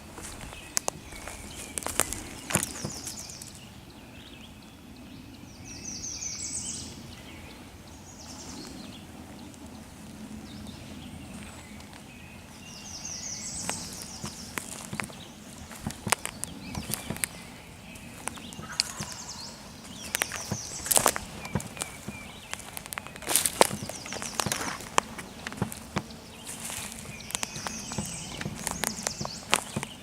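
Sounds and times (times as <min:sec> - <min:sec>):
songbird trilling: 0:00.0 - 0:09.1, 0:10.4 - 0:30.0
sharp snaps: 0:18.0 - 0:30.0.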